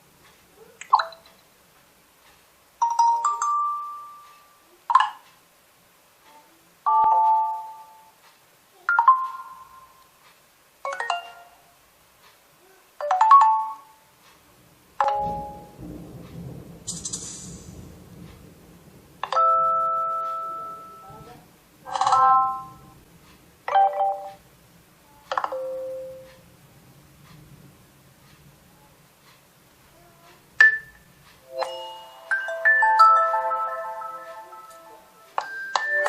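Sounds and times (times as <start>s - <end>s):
faint hiss: 11.6s - 13.0s, 13.9s - 21.9s, 24.3s - 35.6s
chime-like electronic notes: 31.4s - 36.0s.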